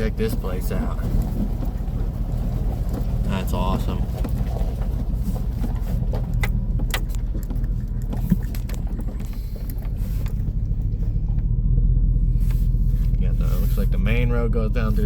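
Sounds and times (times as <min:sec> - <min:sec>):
vehicle engine running at low speed: 0:00.0 - 0:15.0
clicks and rattles: 0:01.0 - 0:11.4.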